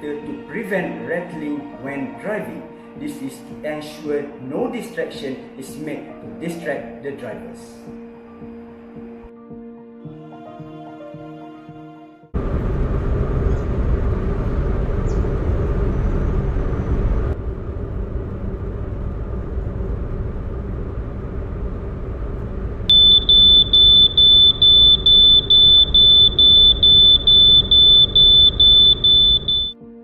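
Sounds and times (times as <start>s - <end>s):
low vehicle rumble: 12.4s - 29.7s
high-pitched alarm beeps: 22.9s - 29.8s.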